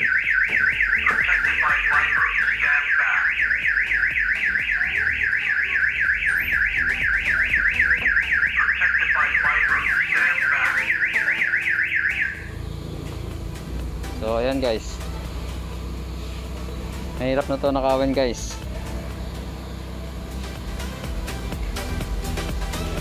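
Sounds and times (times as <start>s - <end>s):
car alarm siren warbling: 0.0s - 12.9s.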